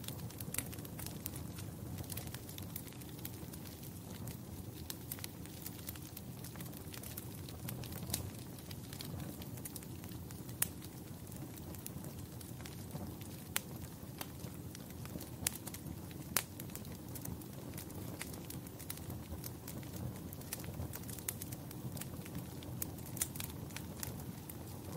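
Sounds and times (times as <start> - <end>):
wood fire crackling: 0.0 - 24.9.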